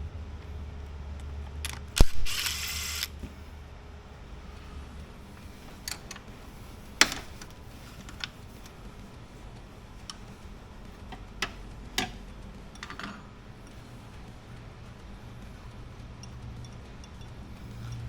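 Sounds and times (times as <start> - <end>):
low steady hum: 0.0 - 18.0
hand tools and metal parts clinking: 11.1 - 13.3.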